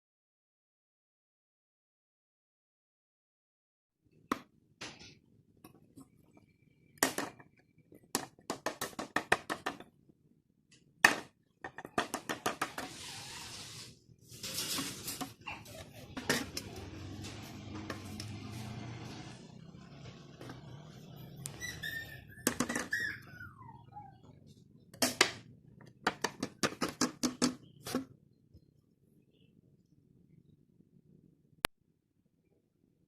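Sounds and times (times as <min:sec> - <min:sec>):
hard objects clicking and knocking: 0:07.0 - 0:10.0, 0:11.0 - 0:12.9, 0:25.0 - 0:28.1.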